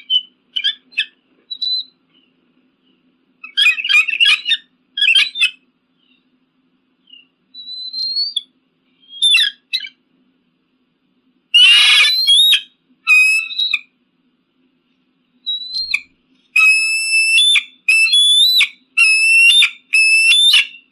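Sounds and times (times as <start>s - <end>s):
eagle calling: 3.4s - 5.6s, 7.0s - 10.0s, 11.6s - 13.9s, 15.5s - 20.9s.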